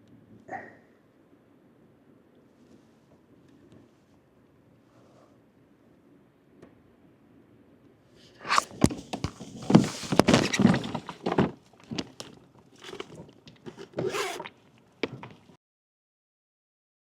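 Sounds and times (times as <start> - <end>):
rustling scrapes: 8.3 - 11.4.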